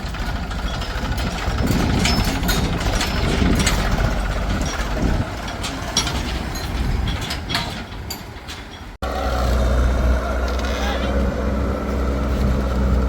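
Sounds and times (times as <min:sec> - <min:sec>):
metallic clanks and knocks: 0:00.0 - 0:09.0
heavy diesel engine running: 0:00.0 - 0:13.0.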